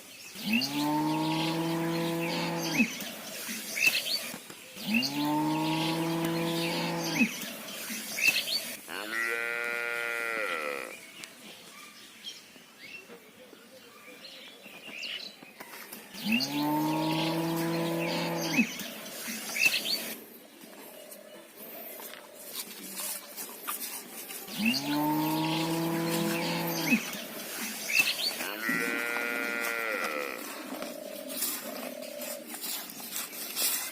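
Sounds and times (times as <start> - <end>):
cattle mooing: 24.6 - 27.1, 28.4 - 30.6.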